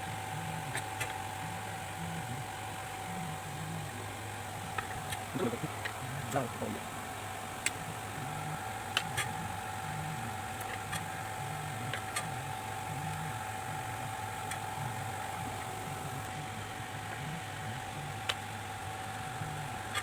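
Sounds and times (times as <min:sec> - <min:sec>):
mechanical hum with whine: 0:00.0 - 0:20.0.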